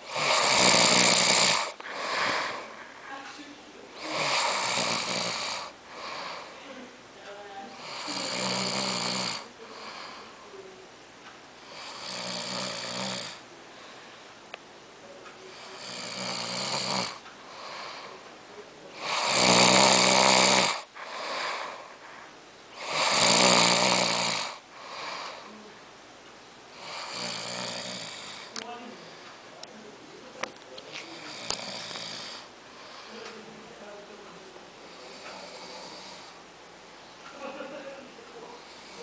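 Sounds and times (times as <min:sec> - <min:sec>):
person snoring heavily: 0:00.0 - 0:02.8, 0:04.0 - 0:06.5, 0:07.8 - 0:10.3, 0:11.7 - 0:13.4, 0:15.6 - 0:18.1, 0:19.0 - 0:22.0, 0:22.8 - 0:25.5, 0:26.8 - 0:28.5, 0:31.2 - 0:32.5
quiet breaths: 0:00.0 - 0:39.0.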